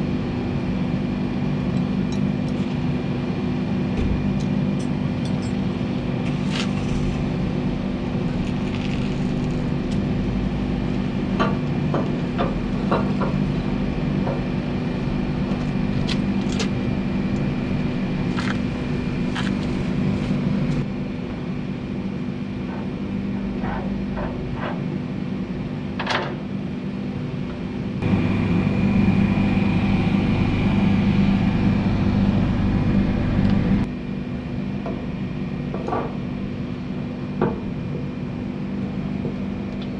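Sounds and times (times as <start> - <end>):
mechanical hum: 0.0 - 39.9
high whine: 28.0 - 34.3.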